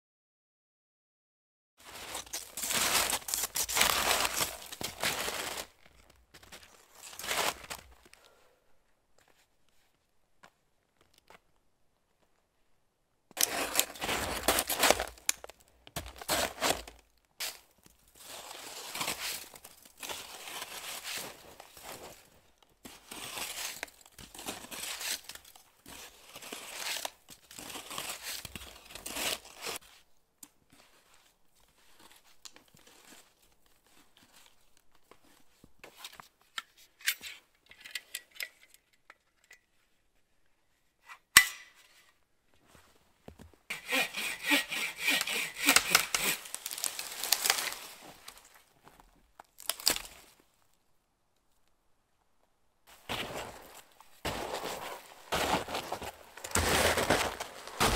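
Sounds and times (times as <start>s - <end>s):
rustling and crunching handling: 1.8s - 8.2s, 13.3s - 37.2s, 42.5s - 50.6s, 52.9s - 57.9s.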